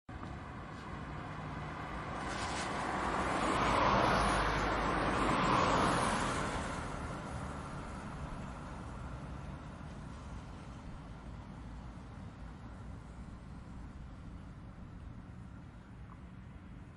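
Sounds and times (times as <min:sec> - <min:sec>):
car passing by: 0:00.4 - 0:11.9.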